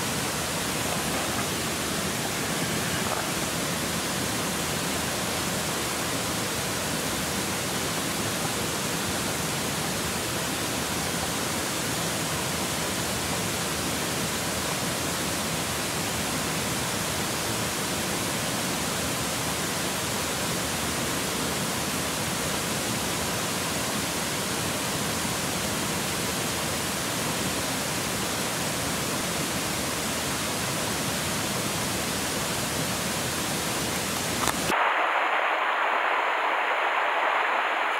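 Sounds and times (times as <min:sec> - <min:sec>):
river water rushing: 0:00.0 - 0:20.0.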